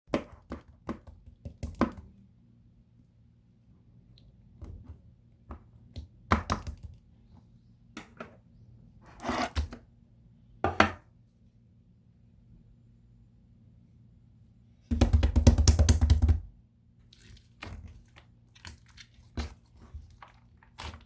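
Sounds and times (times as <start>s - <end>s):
objects knocking on hard surface: 10.7s - 11.0s.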